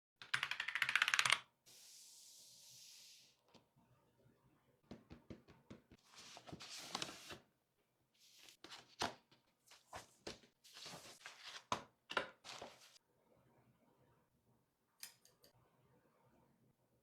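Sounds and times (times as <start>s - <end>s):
mechanical keyboard keys clacking: 0.2s - 1.4s.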